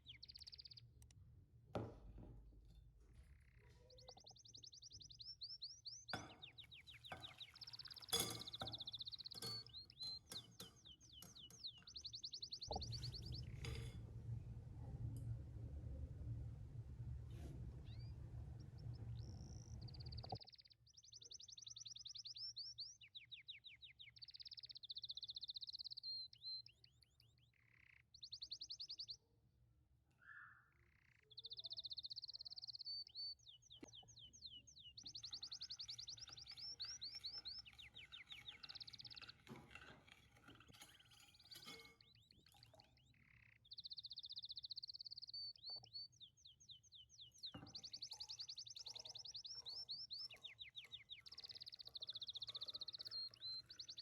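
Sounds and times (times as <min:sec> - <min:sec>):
songbirds trilling and chirping: 0:00.0 - 0:14.3, 0:17.4 - 0:54.0
low steady hum: 0:12.8 - 0:20.4.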